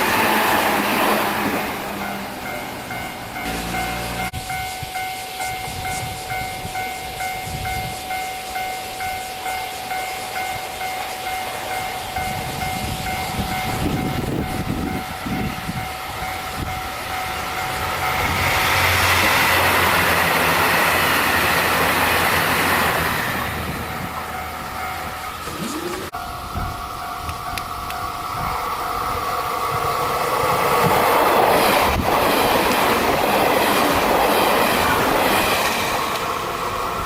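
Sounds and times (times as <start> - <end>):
train wheels on rails: 0.0 - 37.0
level crossing bell ringing: 1.9 - 18.3, 23.8 - 27.3.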